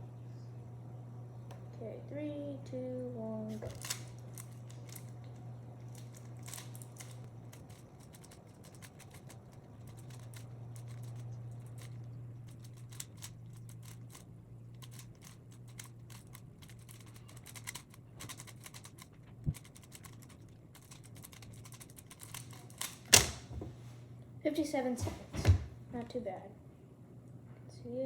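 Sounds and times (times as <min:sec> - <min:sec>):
steady low hum: 0:00.0 - 0:28.0
puzzle cube clicking: 0:14.8 - 0:23.4.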